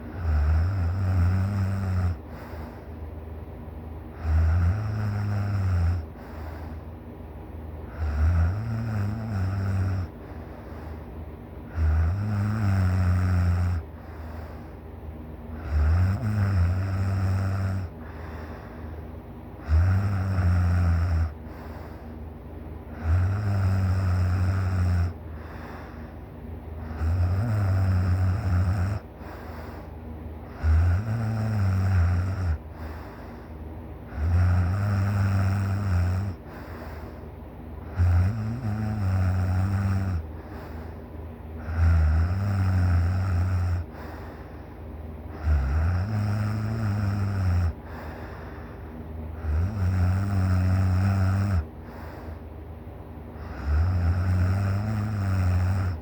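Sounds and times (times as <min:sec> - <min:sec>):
person snoring loudly: 0:00.1 - 0:02.8, 0:04.1 - 0:06.8, 0:07.9 - 0:10.8, 0:11.7 - 0:14.6, 0:15.5 - 0:18.7, 0:19.6 - 0:22.1, 0:22.9 - 0:26.0, 0:26.8 - 0:33.5, 0:34.1 - 0:37.2, 0:37.8 - 0:40.9, 0:41.6 - 0:44.4, 0:45.3 - 0:48.7, 0:49.3 - 0:52.4, 0:53.4 - 0:56.0.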